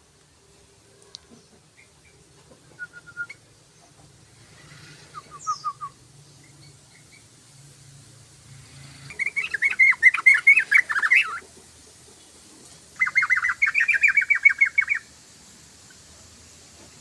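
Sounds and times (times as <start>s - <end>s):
bird chattering song: 5.1s - 7.3s, 9.1s - 11.5s, 13.0s - 15.1s.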